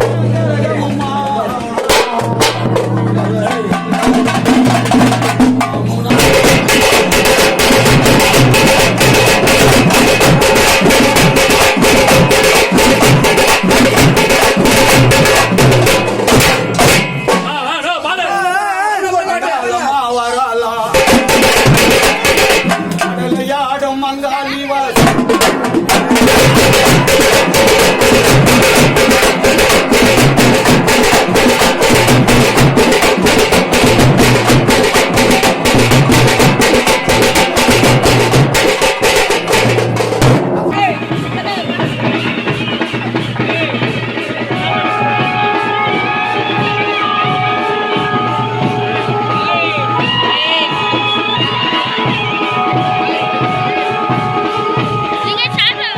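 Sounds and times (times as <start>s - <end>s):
fast loud drumming: 0.0s - 18.2s, 20.9s - 55.9s
wavering melody: 41.0s - 55.9s.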